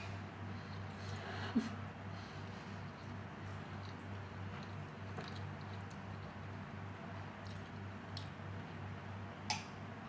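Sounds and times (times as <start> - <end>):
person chewing food: 2.4 - 6.5, 7.4 - 8.4.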